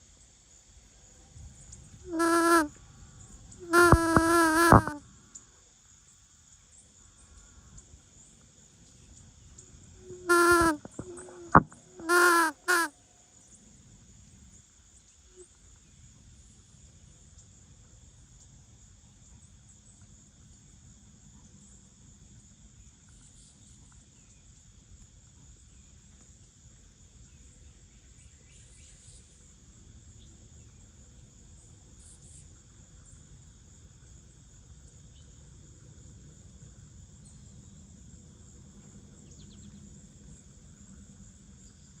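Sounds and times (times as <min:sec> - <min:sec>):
insects chorus: 0:00.0 - 0:42.0.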